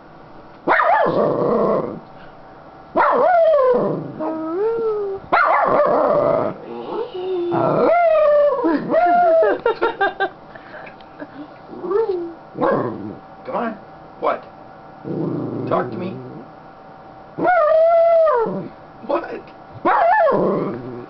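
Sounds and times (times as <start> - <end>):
dog yipping: 0.7 - 1.2, 3.0 - 3.6, 5.3 - 5.9, 19.8 - 20.4
dog howling: 3.0 - 9.6, 17.4 - 18.7, 19.9 - 21.0.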